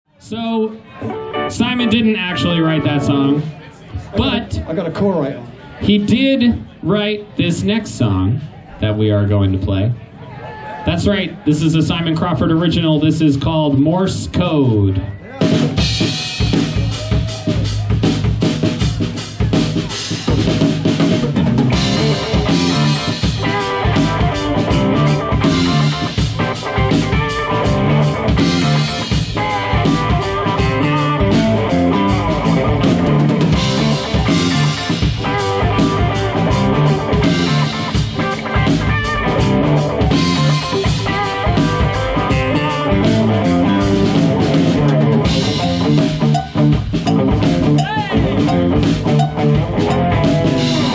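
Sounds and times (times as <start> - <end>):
live band playing a song: 0.3 - 5.0, 15.0 - 50.9.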